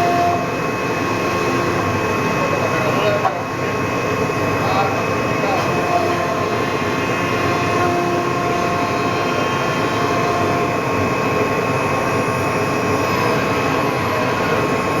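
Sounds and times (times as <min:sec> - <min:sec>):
router machine whining: 0:05.4 - 0:15.0.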